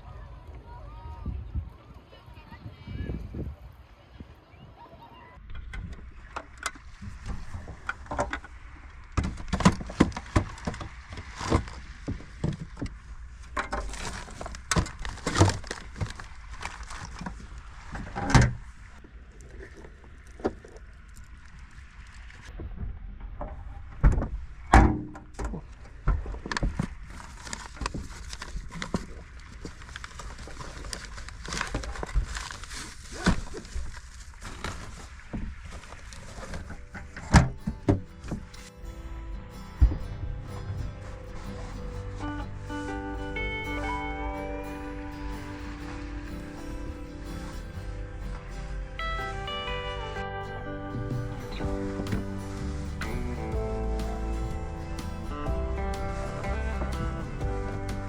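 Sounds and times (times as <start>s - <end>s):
objects knocking and thudding: 5.4s - 18.6s
rustling: 5.5s - 22.5s, 25.4s - 58.0s.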